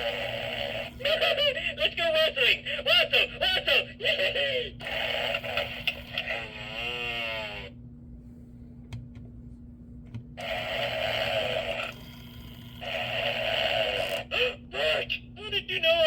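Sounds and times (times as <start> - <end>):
toy snoring: 0.0 - 1.1, 4.8 - 7.7, 10.4 - 14.6
steady low hum: 0.0 - 16.0.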